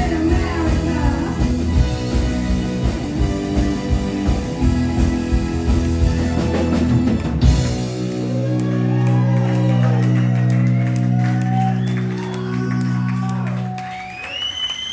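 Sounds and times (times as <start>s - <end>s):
live rock band playing: 0.0s - 13.9s
audience whooping and shouting: 7.8s - 14.9s.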